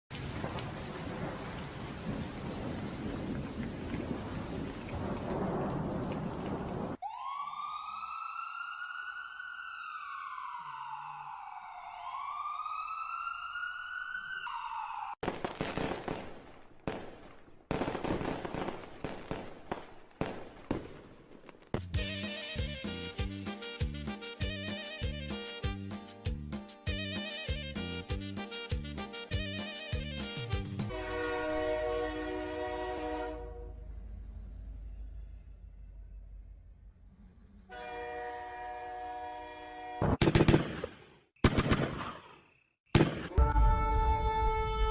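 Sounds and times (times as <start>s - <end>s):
rushing noise like heavy rain: 0.1s - 7.0s
wailing siren-like tone: 7.0s - 15.2s
sharp bangs and cracks: 40.0s - 43.5s.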